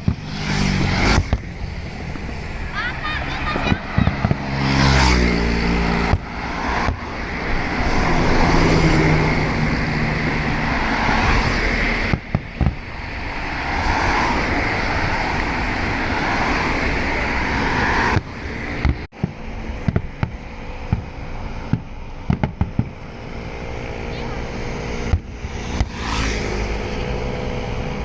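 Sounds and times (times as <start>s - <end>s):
engine humming: 0.0s - 28.0s
road traffic noise: 0.0s - 28.0s.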